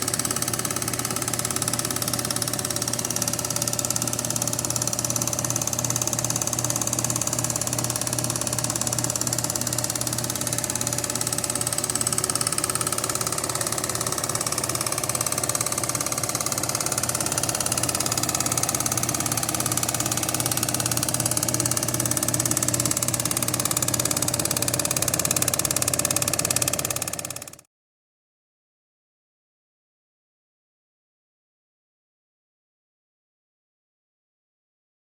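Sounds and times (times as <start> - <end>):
motor hum: 0.0 - 27.6.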